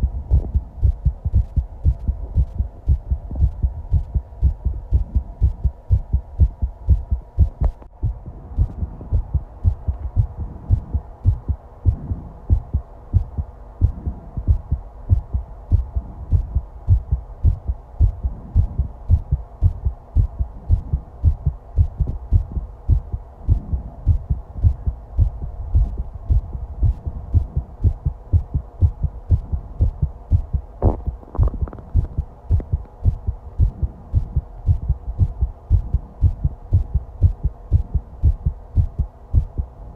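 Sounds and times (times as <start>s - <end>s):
heartbeat thumps: 0.0s - 39.9s
stomach gurgle: 30.8s - 32.1s.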